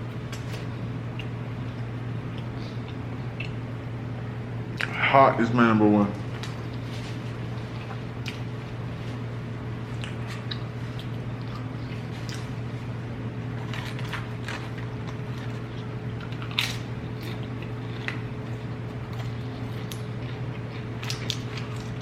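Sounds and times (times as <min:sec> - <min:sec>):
steady low hum: 0:00.0 - 0:22.0
chewing with wet mouth smacks: 0:00.3 - 0:03.6, 0:07.6 - 0:08.5, 0:09.9 - 0:12.6, 0:13.7 - 0:22.0.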